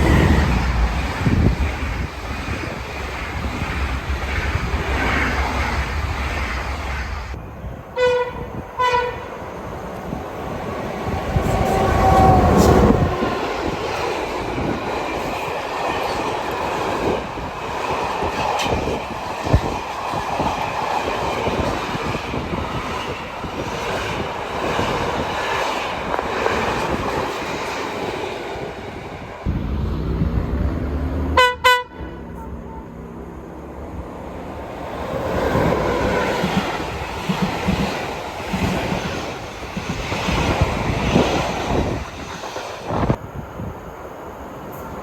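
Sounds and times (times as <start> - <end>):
train passing rumble: 0.0 - 45.0
train horn blasts: 8.0 - 9.4, 31.4 - 33.1.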